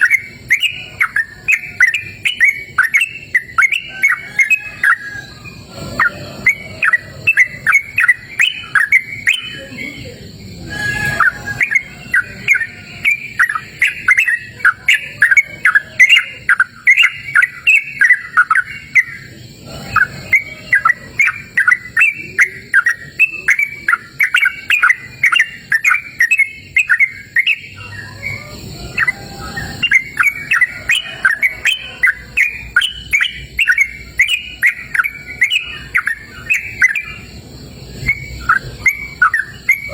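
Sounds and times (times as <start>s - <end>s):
bulbul chirping song: 0.0s - 39.9s.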